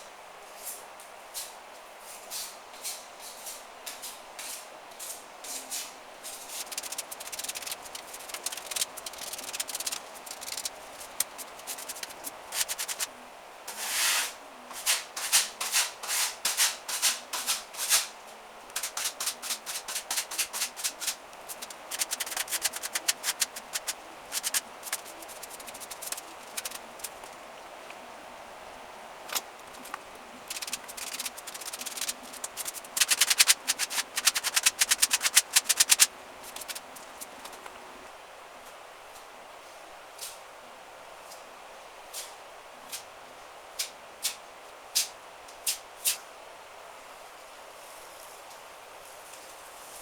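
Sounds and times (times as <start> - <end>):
hand tool scraping plaster: 18.8 - 27.2, 30.5 - 37.4.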